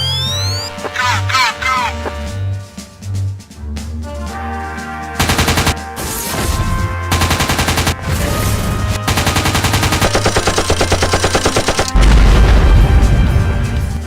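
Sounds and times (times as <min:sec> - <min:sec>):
background music with bass line: 0:00.0 - 0:09.2
rapid gunfire: 0:05.2 - 0:12.2.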